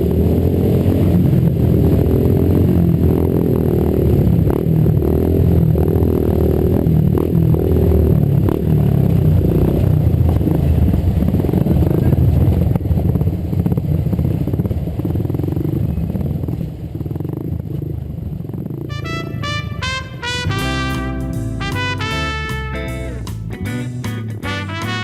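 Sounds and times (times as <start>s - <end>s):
motorcycle engines rumbling: 0.0s - 25.0s.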